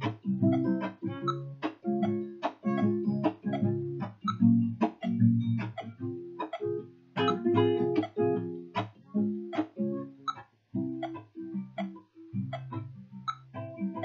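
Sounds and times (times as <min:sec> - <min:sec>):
acoustic guitar playing: 0:00.0 - 0:14.0.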